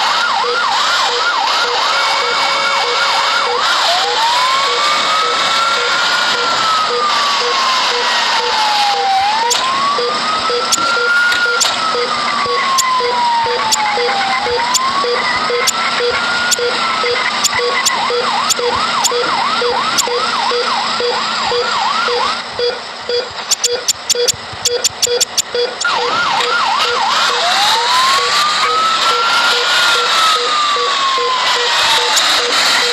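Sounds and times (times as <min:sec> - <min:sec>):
ambulance siren wailing and yelping: 0:00.0 - 0:24.3, 0:25.0 - 0:32.9
steady background noise: 0:00.0 - 0:32.9
light regular ticking: 0:23.2 - 0:25.9.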